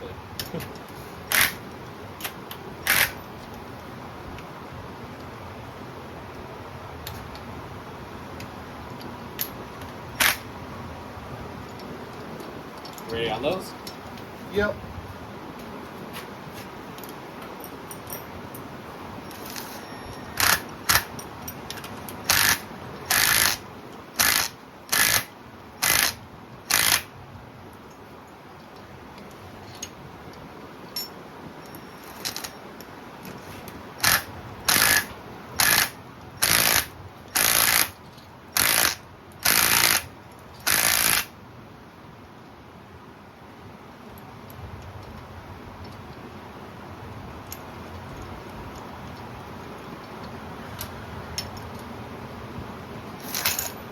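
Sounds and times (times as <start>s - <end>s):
ratchet wrench ratcheting: 1.3s - 1.6s, 2.2s - 3.2s, 10.2s - 10.4s, 19.3s - 21.2s, 21.8s - 23.6s, 24.2s - 27.1s, 32.0s - 32.5s, 34.0s - 41.3s.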